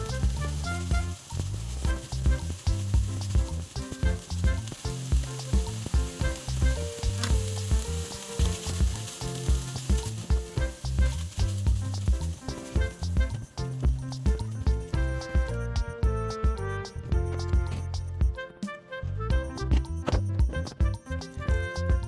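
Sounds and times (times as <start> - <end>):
food sizzling in a pan: 0.0 - 14.5
background music with beat: 0.0 - 22.0.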